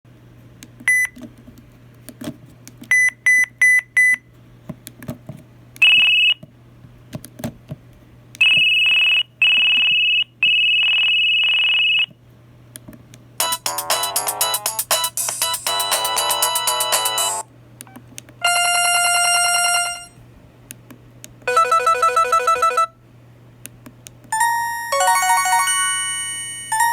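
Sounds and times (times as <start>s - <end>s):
ringtone melody: 13.4s - 17.4s, 18.4s - 20.2s, 21.5s - 22.9s, 24.3s - 26.9s
cell phone beeping: 13.4s - 20.1s, 21.5s - 22.9s.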